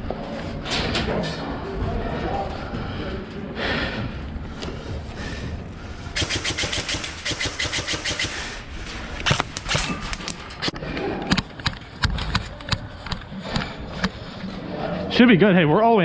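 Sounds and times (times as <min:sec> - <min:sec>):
airsoft gun full-auto burst: 0:06.2 - 0:08.6.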